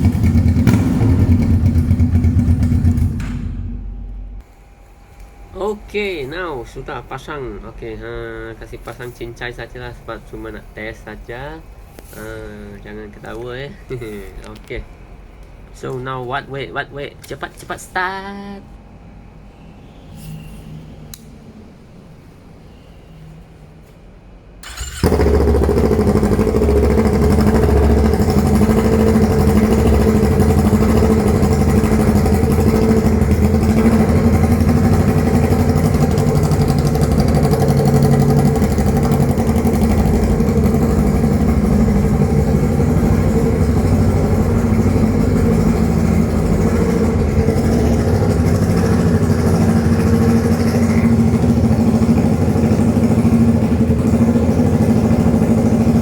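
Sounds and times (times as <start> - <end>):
motorcycle engine starting and idling: 0.0 - 4.5, 24.6 - 56.0.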